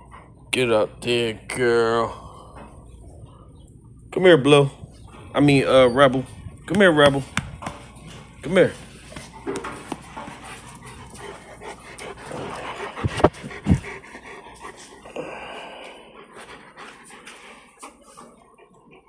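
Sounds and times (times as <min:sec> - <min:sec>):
dog panting: 0:00.0 - 0:01.2, 0:06.0 - 0:19.0.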